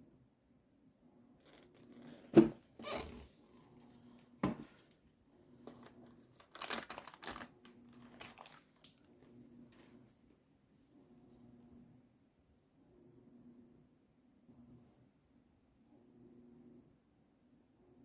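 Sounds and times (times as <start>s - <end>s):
packaging crinkling and tearing: 5.7s - 9.1s.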